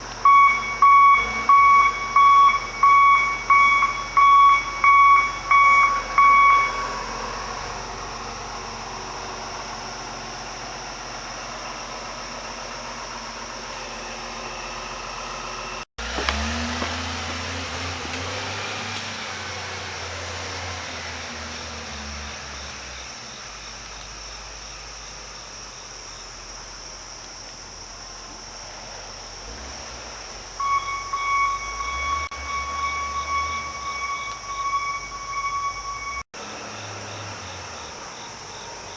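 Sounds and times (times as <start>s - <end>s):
electronic beeper high tone: 0.3s - 6.9s, 30.6s - 36.2s.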